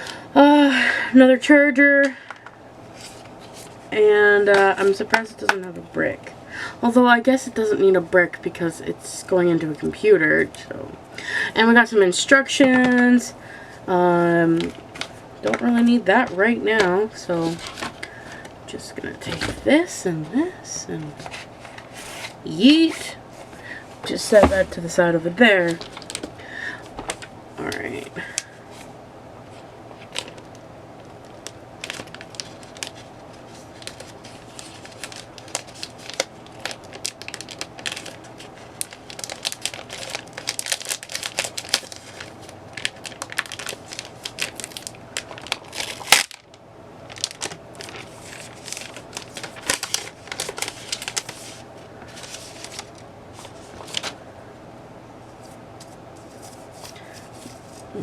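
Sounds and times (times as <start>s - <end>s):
plastic packaging crinkling: 14.6s - 18.6s, 24.2s - 26.4s, 29.9s - 54.2s, 55.4s - 58.0s.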